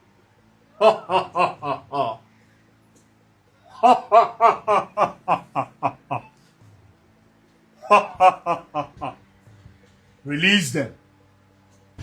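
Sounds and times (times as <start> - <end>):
loud rhythmic laughter: 0.8 - 2.2, 3.7 - 6.4, 7.8 - 9.2.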